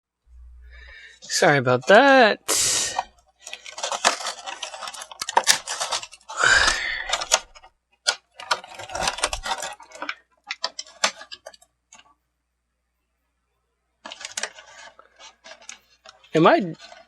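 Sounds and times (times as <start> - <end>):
packaging crinkling: 1.8 - 12.1, 14.0 - 17.0.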